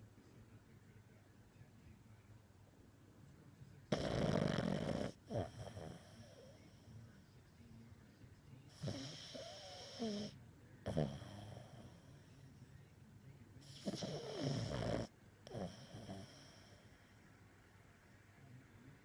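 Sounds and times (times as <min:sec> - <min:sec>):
dog snoring: 0:03.9 - 0:06.9, 0:08.7 - 0:12.3, 0:13.6 - 0:17.1.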